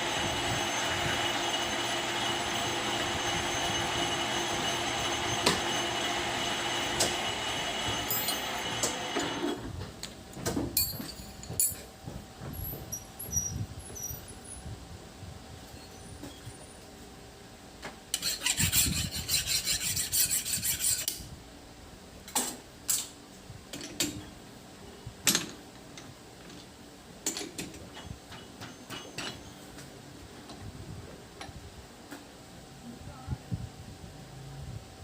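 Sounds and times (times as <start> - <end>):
metal rasping: 18.1 - 21.2.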